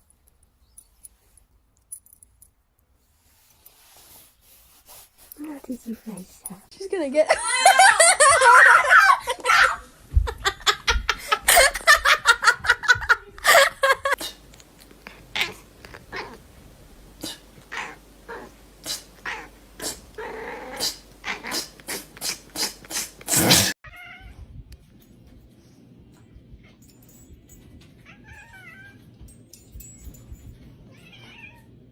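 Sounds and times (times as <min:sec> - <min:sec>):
person laughing: 0:07.3 - 0:14.2
cat yowling and meowing: 0:30.9 - 0:31.7.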